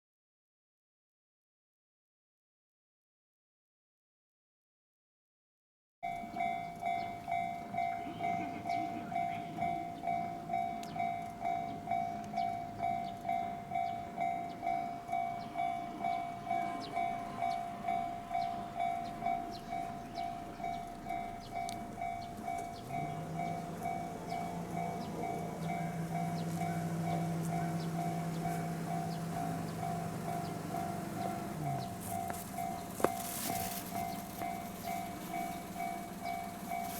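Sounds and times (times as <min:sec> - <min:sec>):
level crossing warning bell ringing: 0:06.0 - 0:36.9
low rumble: 0:17.0 - 0:36.9.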